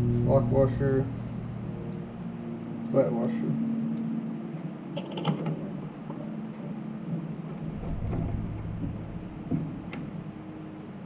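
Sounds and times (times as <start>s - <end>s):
low rumble: 0.0s - 4.8s, 7.1s - 11.0s
steady low hum: 0.0s - 11.0s.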